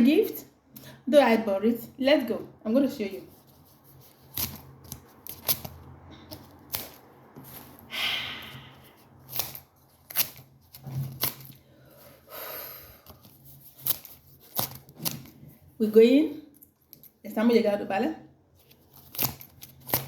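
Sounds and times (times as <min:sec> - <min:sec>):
packaging rustling and crinkling: 0:18.6 - 0:20.0.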